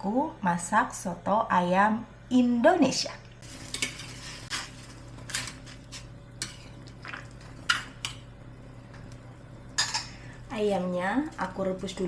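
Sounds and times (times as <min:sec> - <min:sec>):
steady low hum: 0:00.0 - 0:12.0
pots and utensils clinking: 0:03.4 - 0:06.8, 0:09.8 - 0:10.2.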